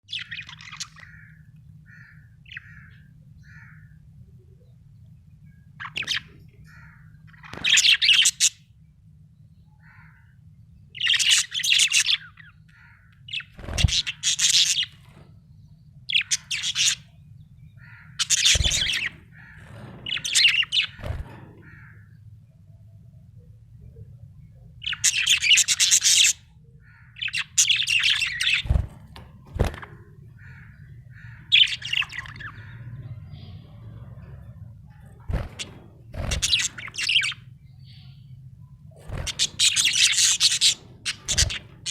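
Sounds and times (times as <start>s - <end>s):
steady low hum: 0.0s - 41.9s
budgerigar chirping and warbling: 35.1s - 38.1s, 39.1s - 41.9s.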